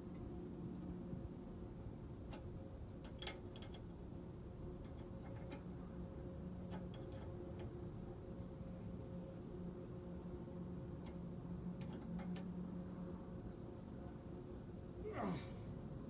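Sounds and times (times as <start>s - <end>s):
steady low hum: 0.0s - 16.0s
wrench metallic clicks and taps: 11.8s - 12.5s.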